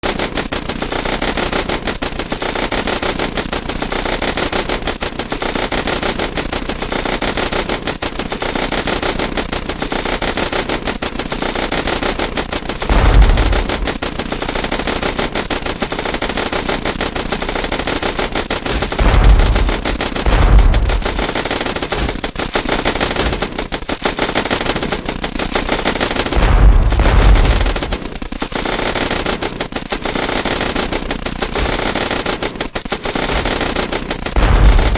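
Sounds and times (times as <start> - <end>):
rapid automatic gunfire: 0.0 - 34.9
deep booms: 12.9 - 14.3, 18.7 - 22.5, 26.4 - 28.2, 34.4 - 34.9.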